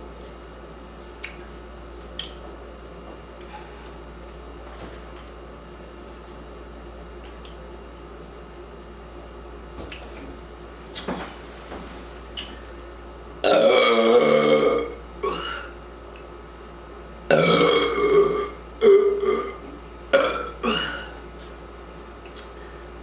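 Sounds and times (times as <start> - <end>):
loud burps: 13.4 - 15.8, 17.3 - 21.2.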